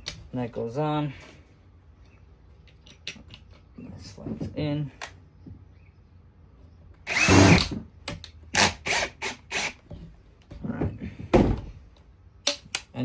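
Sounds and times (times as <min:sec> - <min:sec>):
power screwdriver driving screw: 0:07.1 - 0:07.8, 0:08.6 - 0:09.8.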